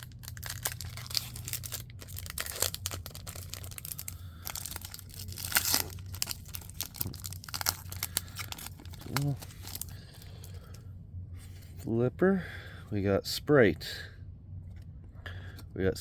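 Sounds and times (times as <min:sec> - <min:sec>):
wrapper ripping: 0:00.0 - 0:10.3
card pack wrapper crinkling: 0:00.0 - 0:10.7.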